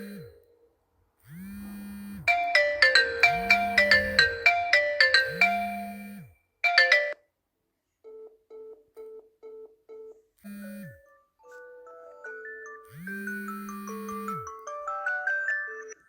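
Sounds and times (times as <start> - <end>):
short even beeps: 2.2 - 6.9
chiming ringtone: 2.3 - 7.2, 10.9 - 16.0
marimba ringtone melody: 2.3 - 7.2, 11.8 - 16.0.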